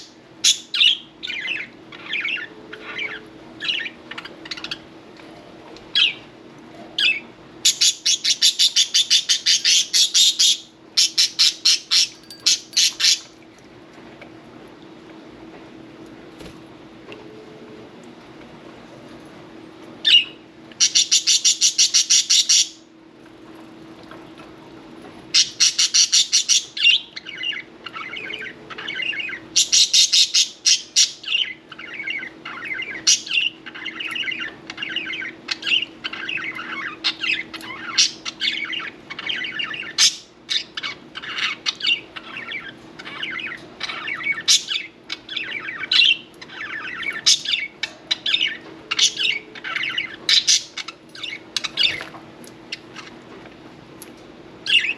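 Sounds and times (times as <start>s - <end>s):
budgerigars chattering and warbling: 25.4s - 52.1s, 54.6s - 54.9s.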